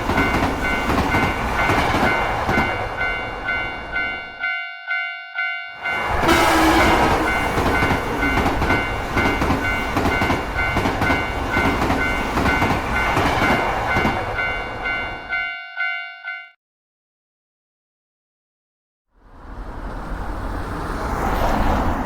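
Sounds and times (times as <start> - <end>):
level crossing alarm bell ringing: 0.0 - 16.6.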